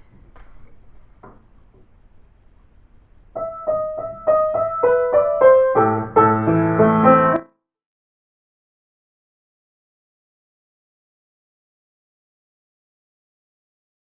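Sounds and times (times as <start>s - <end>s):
piano chords: 3.4s - 7.5s
piano melody single notes: 3.4s - 7.5s.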